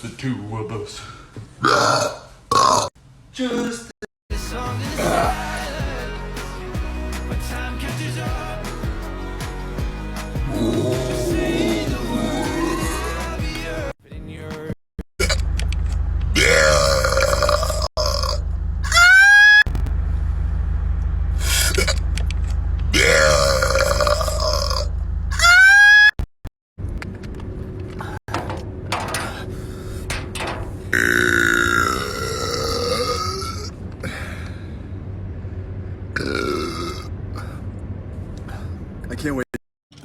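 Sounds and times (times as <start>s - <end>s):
man belching: 1.6s - 2.9s, 4.8s - 5.7s, 10.4s - 13.5s, 16.4s - 18.4s, 23.0s - 24.9s, 30.9s - 33.7s, 36.2s - 37.1s.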